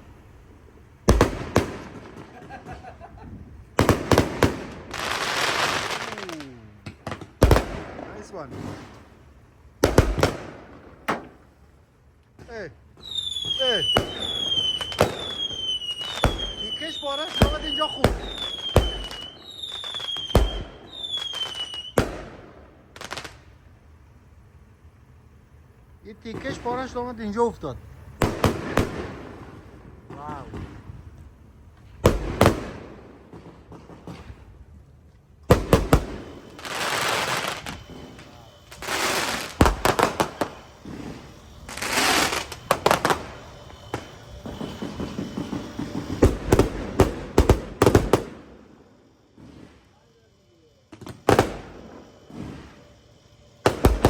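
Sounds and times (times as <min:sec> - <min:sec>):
fireworks bangs: 0:00.0 - 0:54.0
fireworks crackle: 0:00.0 - 0:54.0
fireworks whistling: 0:00.0 - 0:54.0
burst of hiss: 0:01.1 - 0:10.6, 0:12.5 - 0:24.7, 0:35.5 - 0:54.0.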